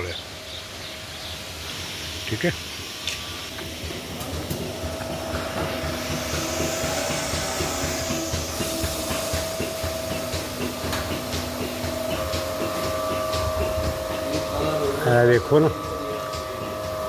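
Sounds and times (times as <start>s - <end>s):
air hiss: 0.0s - 17.0s
milking machine hum: 3.4s - 17.0s.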